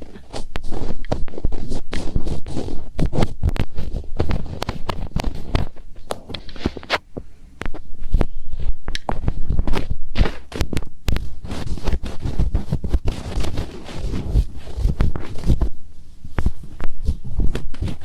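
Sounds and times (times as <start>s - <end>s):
fingers scratching on microphone: 0.0s - 18.0s.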